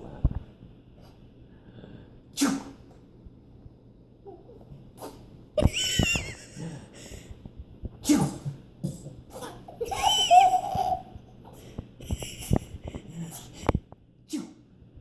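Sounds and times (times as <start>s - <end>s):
person fake sneezing: 2.4s - 2.8s, 5.0s - 5.3s, 8.0s - 8.5s, 14.3s - 14.6s
person laughing: 5.6s - 6.9s, 9.4s - 11.2s, 12.0s - 13.5s.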